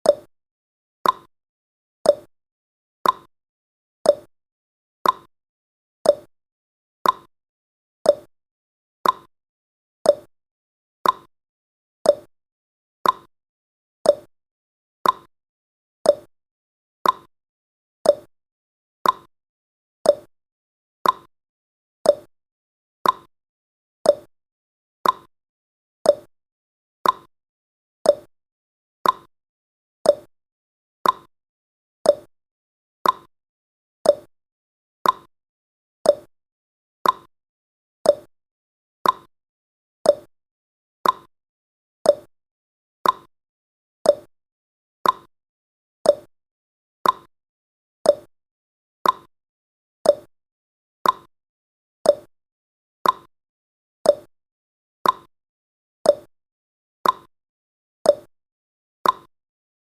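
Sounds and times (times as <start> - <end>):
clock ticking: 39.0 - 39.3, 41.0 - 41.3, 47.0 - 47.3.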